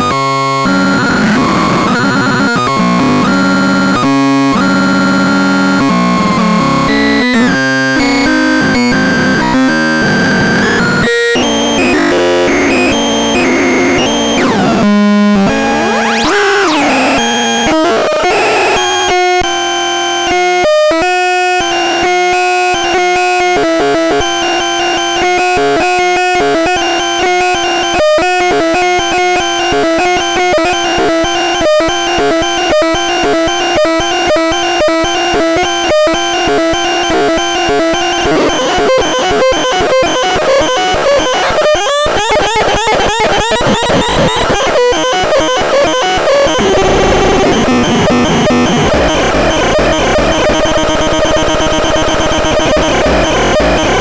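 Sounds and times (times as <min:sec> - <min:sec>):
buzzy synthesizer notes: 0:00.0 - 0:54.0
choppy electronic bleeps: 0:00.7 - 0:19.4, 0:32.4 - 0:54.0
synthesizer held tone: 0:08.6 - 0:19.2, 0:36.6 - 0:41.5, 0:46.4 - 0:54.0.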